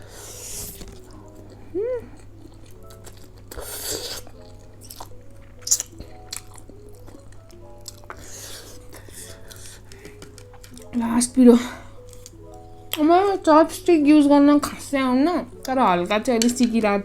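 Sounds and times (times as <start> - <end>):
soft background music: 0.0 - 17.0
chewing and biting: 0.5 - 11.0
slurping: 3.4 - 5.9.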